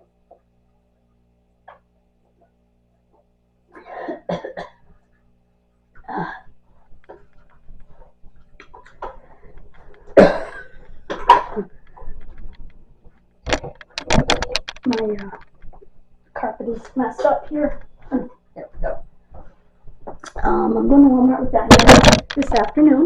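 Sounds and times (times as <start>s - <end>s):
woman coughing: 3.8s - 4.8s, 10.2s - 11.8s.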